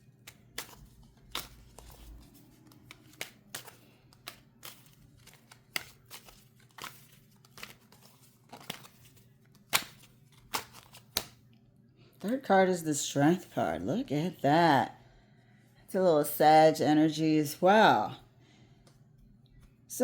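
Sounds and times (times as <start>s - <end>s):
cards being shuffled: 0.1s - 11.4s.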